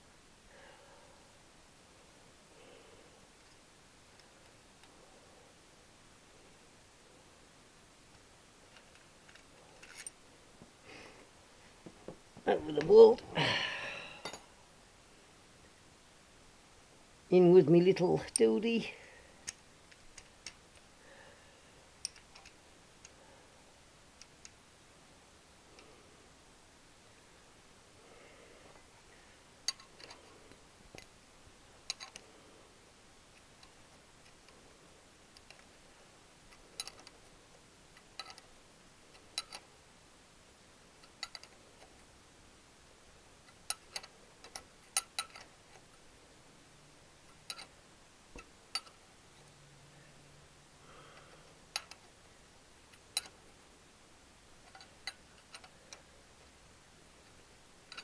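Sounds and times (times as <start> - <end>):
faint hiss: 0.0 - 58.0
metallic clicks of hand tools: 36.8 - 37.2, 38.0 - 38.4, 39.2 - 39.6, 41.0 - 41.6, 43.5 - 45.5, 47.4 - 47.7, 48.4 - 49.0, 51.7 - 52.1.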